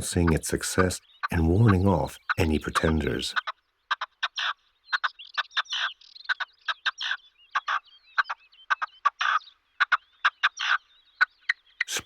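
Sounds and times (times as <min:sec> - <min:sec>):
partridge calling harsh phrases: 0:00.0 - 0:03.5, 0:11.8 - 0:12.0.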